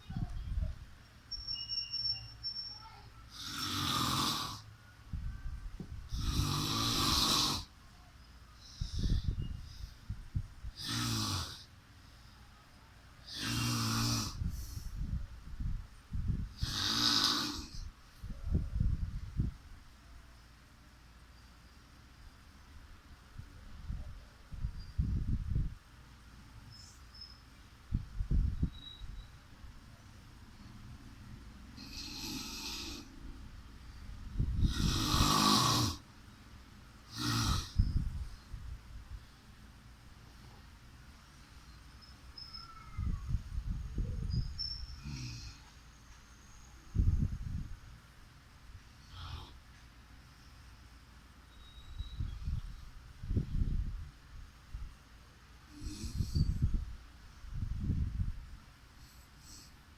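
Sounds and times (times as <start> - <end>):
person snoring: 3.4 - 4.6, 6.1 - 7.7, 10.8 - 11.7, 13.3 - 14.4, 16.6 - 17.8, 31.8 - 33.1, 34.6 - 36.0, 37.1 - 37.8
soft breath: 8.5 - 10.4, 14.4 - 15.2, 55.7 - 56.9.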